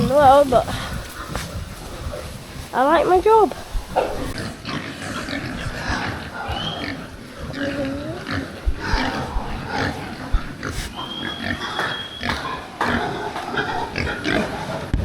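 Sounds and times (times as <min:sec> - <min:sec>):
pigs grunting: 0:00.0 - 0:02.3, 0:03.5 - 0:15.0
pig squealing: 0:04.0 - 0:14.8.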